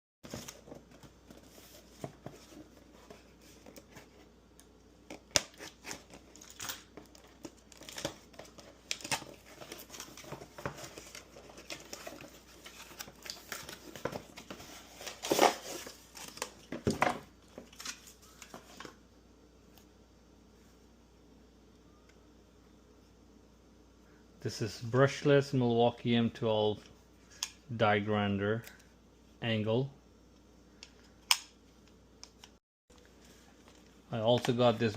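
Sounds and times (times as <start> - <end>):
packaging crinkling and tearing: 5.1 - 16.7.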